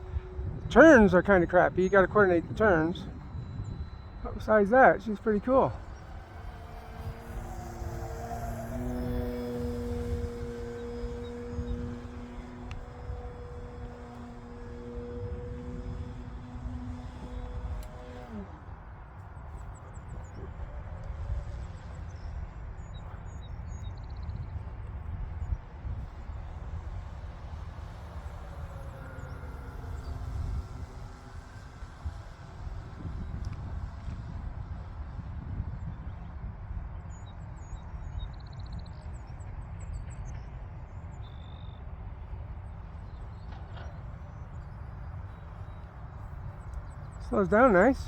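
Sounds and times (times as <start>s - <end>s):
small birds chirping: 0.0s - 34.3s
wind rumbling on microphone: 0.0s - 48.0s.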